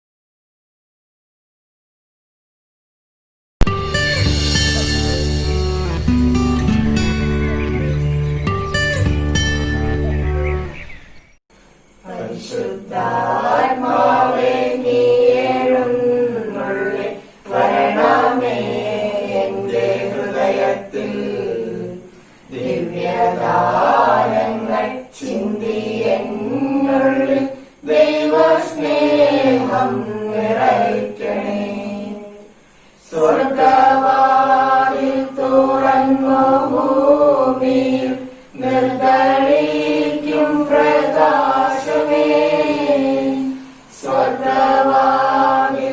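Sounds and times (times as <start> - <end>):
choir singing a hymn: 11.9 - 45.9.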